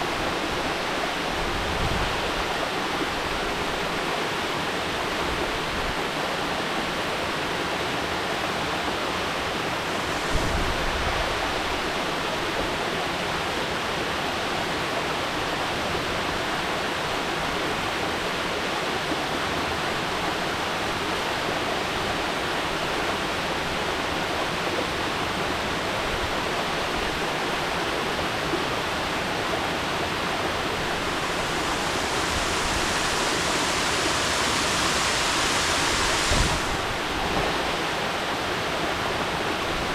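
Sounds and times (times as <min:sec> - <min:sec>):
waterfall splashing: 0:08.8 - 0:12.6, 0:27.1 - 0:39.8.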